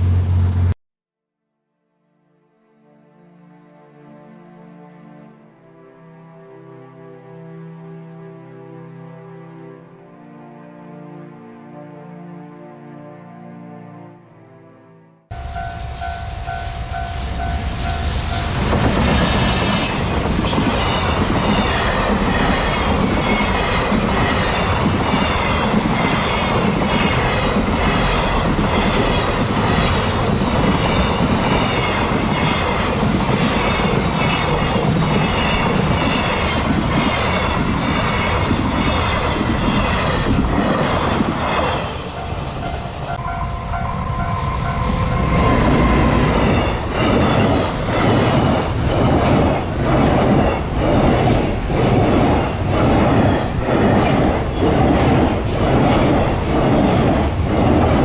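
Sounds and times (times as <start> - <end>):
freight train passing: 0.0 - 0.8, 15.2 - 58.0.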